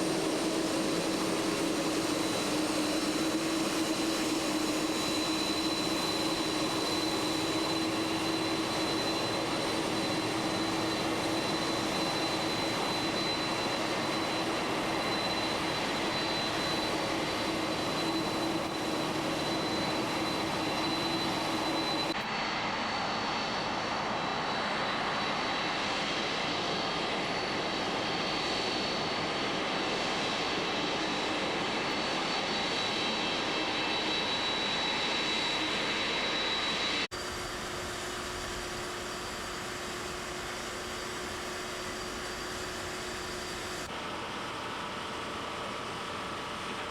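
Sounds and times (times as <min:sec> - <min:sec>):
high engine whine: 0:00.0 - 0:44.9
jet engines running: 0:00.0 - 0:46.9.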